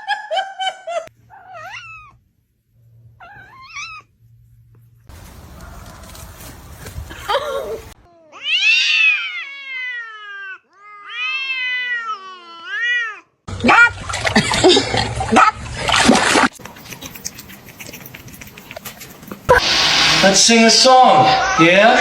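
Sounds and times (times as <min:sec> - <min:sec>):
cat meowing: 0:01.3 - 0:02.2, 0:08.2 - 0:13.3
rustling: 0:03.9 - 0:08.0.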